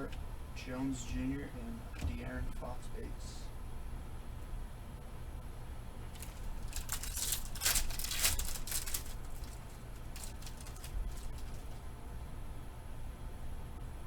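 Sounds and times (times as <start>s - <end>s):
cards rustling and scraping: 6.1s - 11.9s.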